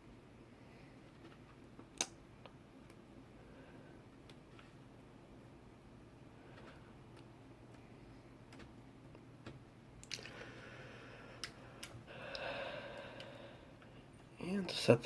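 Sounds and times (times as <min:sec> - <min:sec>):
fingers clicking on wires: 0:01.1 - 0:03.0, 0:08.4 - 0:10.3.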